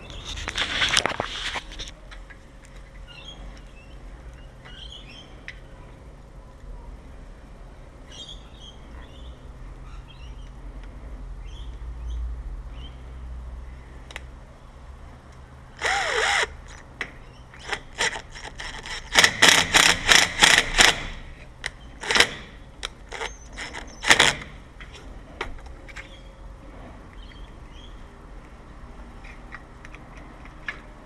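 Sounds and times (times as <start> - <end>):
tool scraping on lock: 17.6 - 26.2.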